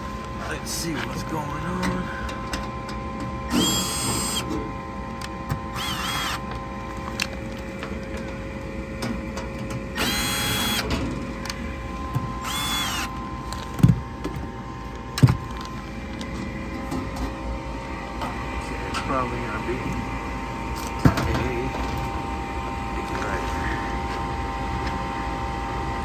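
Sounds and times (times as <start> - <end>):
cordless screwdriver whirring: 3.5 - 4.5, 5.7 - 6.5, 10.0 - 10.9, 12.4 - 13.2.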